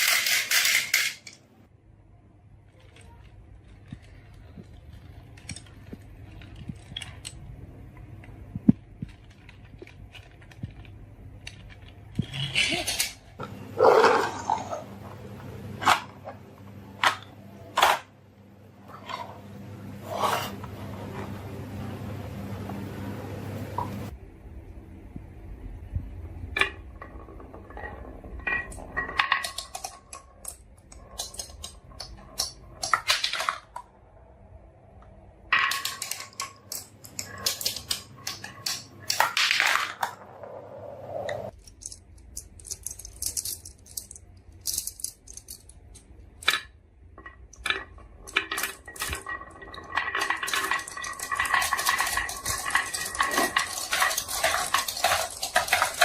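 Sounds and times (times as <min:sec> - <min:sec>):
marbles clattering down a run: 0:47.6 - 0:56.0.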